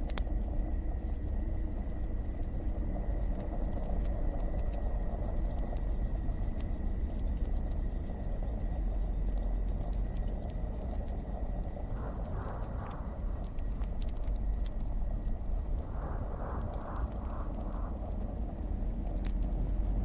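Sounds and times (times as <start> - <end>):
crickets chirring: 0.0 - 20.0
fire crackling: 0.0 - 20.0
low fire rumble: 0.0 - 20.0.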